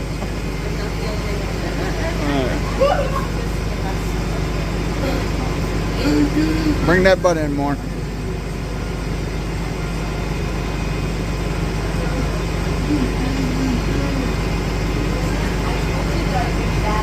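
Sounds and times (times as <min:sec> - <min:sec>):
bus engine idling: 0:00.0 - 0:17.0
faint voice: 0:11.9 - 0:17.0.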